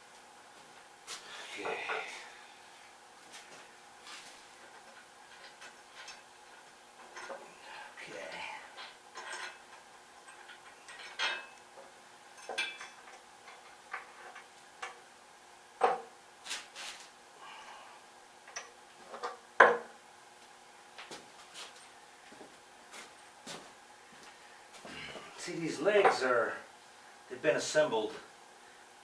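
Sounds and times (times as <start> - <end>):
metal hardware clinking: 8.8 - 11.6, 12.4 - 15.0.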